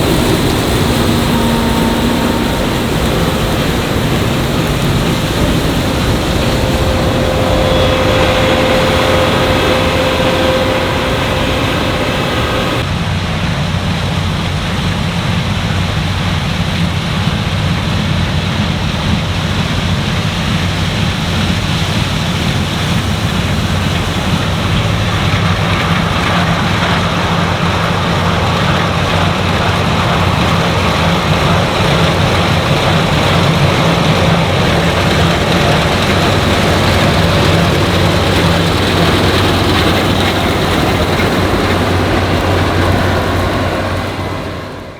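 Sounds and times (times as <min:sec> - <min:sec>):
diesel engine humming: 0:00.0 - 0:12.9, 0:23.5 - 0:44.9
threshing machinery noise: 0:00.0 - 0:12.9, 0:23.0 - 0:44.9.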